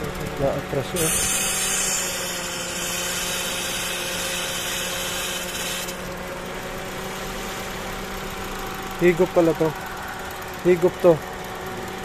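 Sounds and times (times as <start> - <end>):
car engine idling: 0.0 - 1.1, 1.8 - 12.0
loud air hiss: 1.0 - 5.9.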